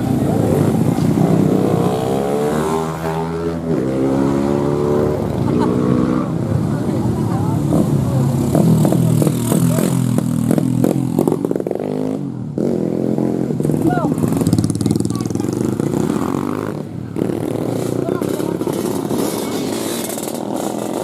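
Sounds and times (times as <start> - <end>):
voices: 0.0 - 12.6, 13.2 - 21.0
motorcycle engines revving: 0.0 - 21.0.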